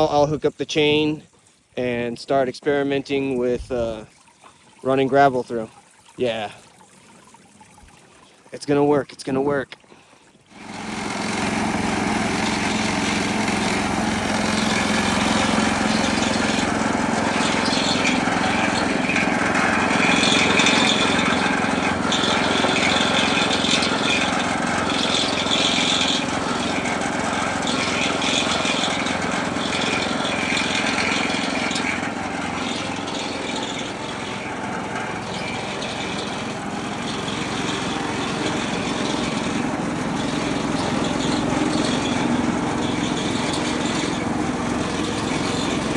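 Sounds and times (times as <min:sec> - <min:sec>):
water running through drum: 0:00.0 - 0:45.9
small engine running: 0:10.4 - 0:45.9
turning drum clattering: 0:10.5 - 0:45.9.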